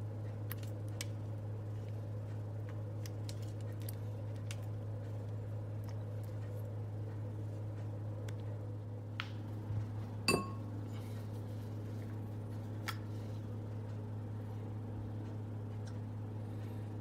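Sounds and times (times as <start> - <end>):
low hum: 0.0 - 17.0
glassware clinking: 10.3 - 10.6.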